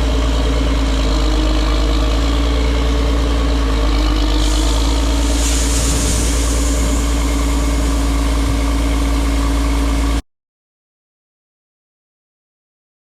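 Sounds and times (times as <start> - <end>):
farm machinery engine humming: 0.0 - 10.2
hiss: 4.4 - 9.1.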